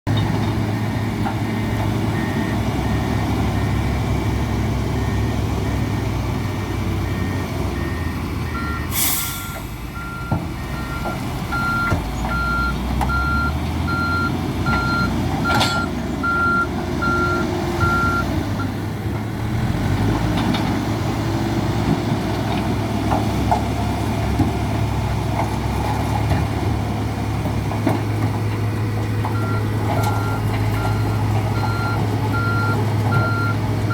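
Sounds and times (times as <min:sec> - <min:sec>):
diesel engine running: 0:00.1 - 0:33.9
reversing alarm beeping: 0:02.2 - 0:03.8, 0:05.0 - 0:18.7, 0:29.3 - 0:33.9
short hiss: 0:08.9 - 0:09.8.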